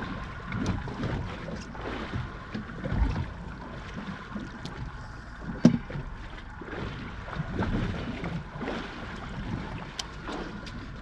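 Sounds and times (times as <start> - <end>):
water around boat: 0.0 - 11.0
wind: 0.0 - 11.0
sharp knock on boat: 5.5 - 6.1.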